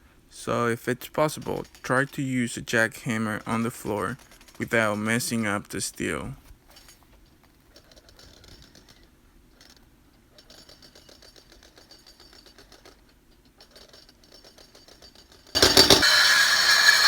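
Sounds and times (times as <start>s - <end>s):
rotary hammer chipping concrete: 1.0s - 5.8s, 15.6s - 17.0s.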